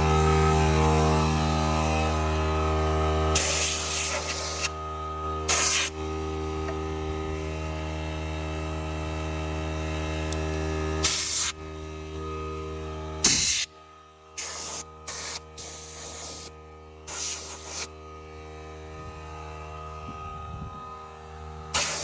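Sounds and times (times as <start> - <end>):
steady electric hum: 0.0 - 22.0
compressed air hissing blasts: 3.4 - 4.7, 5.5 - 6.0, 11.0 - 11.6, 13.2 - 13.7, 14.4 - 16.5, 17.1 - 17.9, 21.8 - 22.0.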